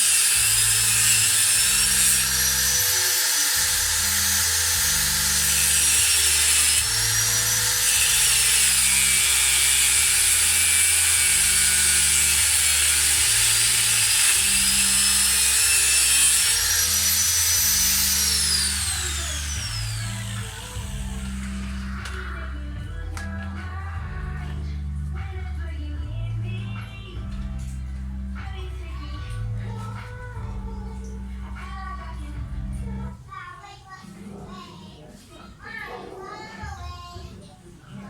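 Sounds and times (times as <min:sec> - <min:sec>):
power tool whining: 0:00.0 - 0:23.0
background music with bass line: 0:03.6 - 0:33.2.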